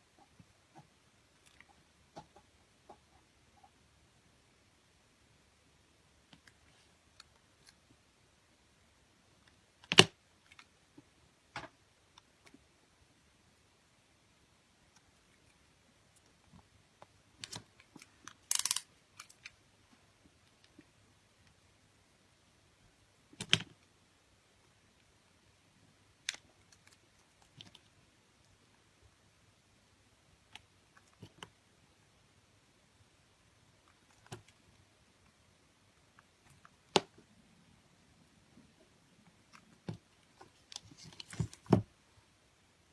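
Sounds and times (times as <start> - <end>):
faint clicks and taps: 0.1 - 3.8, 38.5 - 41.9.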